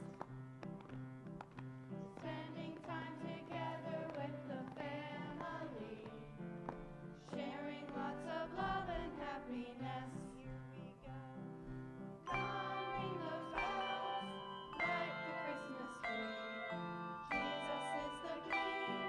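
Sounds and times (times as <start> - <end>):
voices singing christmas song: 2.1 - 19.0
instrumental accompaniment: 10.6 - 19.0.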